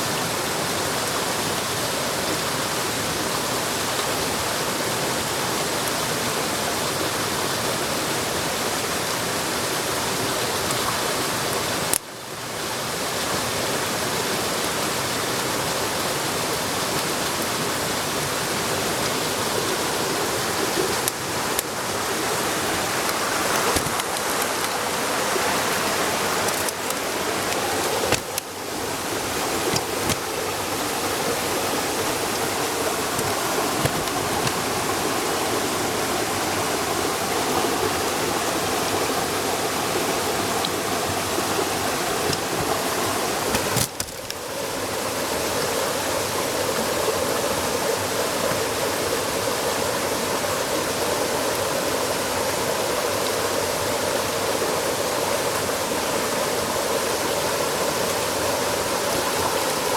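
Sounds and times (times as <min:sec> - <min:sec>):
bonfire crackling: 0:22.6 - 0:31.0
fire pops: 0:23.0 - 0:24.8, 0:26.4 - 0:28.6, 0:42.2 - 0:44.5.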